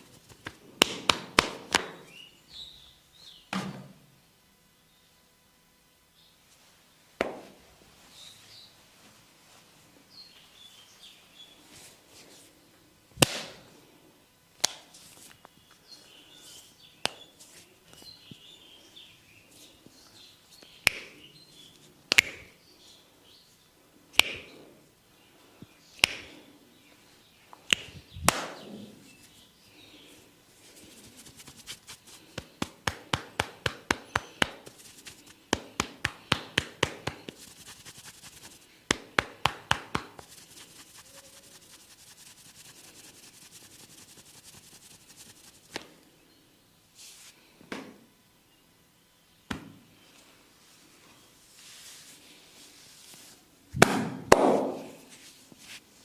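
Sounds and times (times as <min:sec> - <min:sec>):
sharp cracks: 0:13.2 - 0:13.6.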